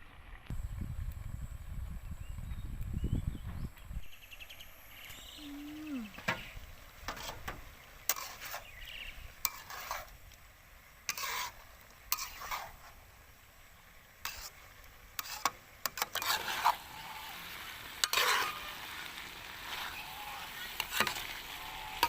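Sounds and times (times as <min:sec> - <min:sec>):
light sizzle: 0:00.0 - 0:22.0
utensil scraping a pan: 0:06.1 - 0:10.2, 0:11.1 - 0:13.0, 0:14.2 - 0:14.6, 0:15.2 - 0:22.0.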